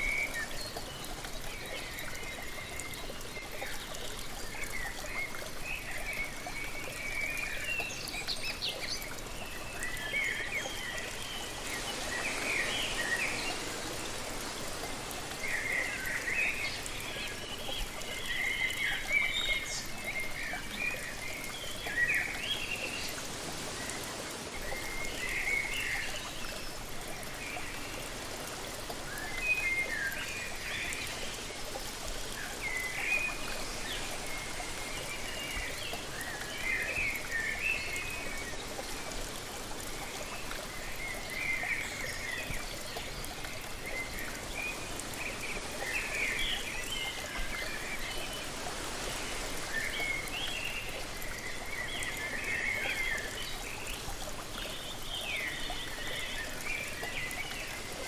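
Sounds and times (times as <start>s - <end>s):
waterfall rushing: 11.4s - 17.0s.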